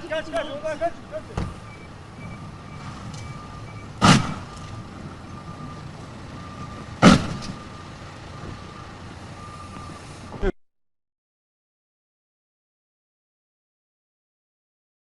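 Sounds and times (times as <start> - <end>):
vehicle engine noise: 0.0 - 10.6
reversing alarm beeping: 0.1 - 10.4
loud bangs: 3.8 - 4.8, 7.0 - 7.6.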